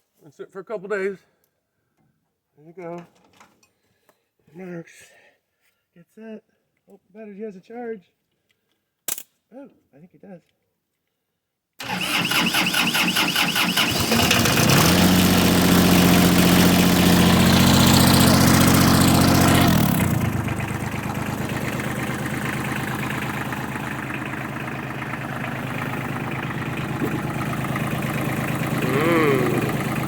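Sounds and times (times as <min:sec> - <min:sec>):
starter cranking engine: 0:11.8 - 0:30.0
tractor diesel engine running: 0:11.8 - 0:30.0.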